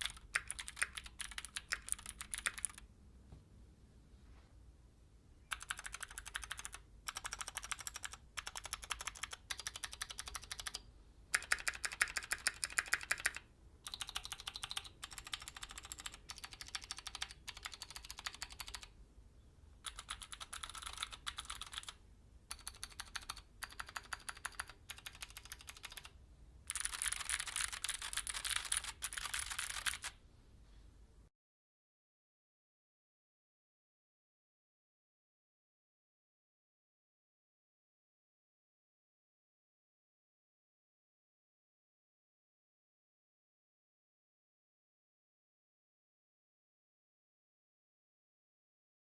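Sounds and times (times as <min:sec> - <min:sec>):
mechanical keyboard typing: 0:00.0 - 0:02.8, 0:05.5 - 0:18.9, 0:19.8 - 0:26.1, 0:26.7 - 0:30.2.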